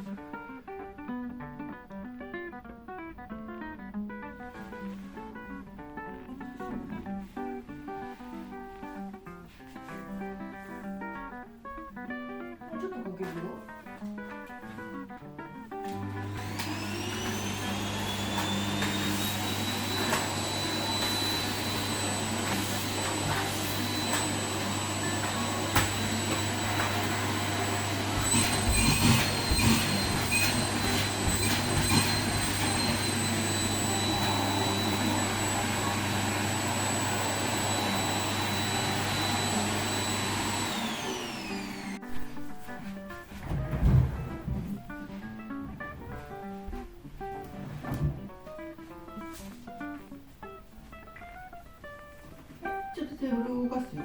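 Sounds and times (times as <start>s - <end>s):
vacuum cleaner motor whine: 15.8s - 44.5s.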